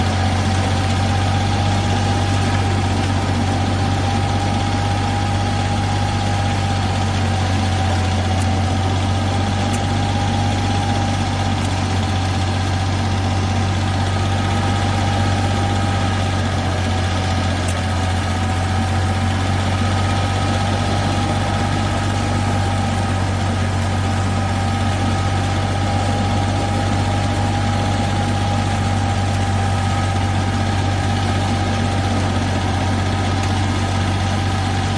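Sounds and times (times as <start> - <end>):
grass cutter engine hum and whine: 0.0 - 34.9.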